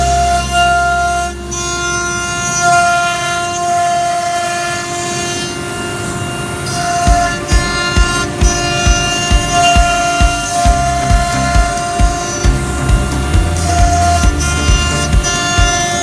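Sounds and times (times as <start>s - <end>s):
horn-like held chords: 0.0s - 16.0s
thumping beat: 7.0s - 16.0s.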